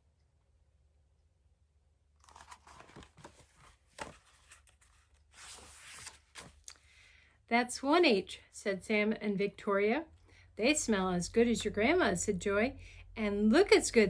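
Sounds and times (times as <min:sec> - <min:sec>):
pages rustling and turning: 0:02.2 - 0:06.8.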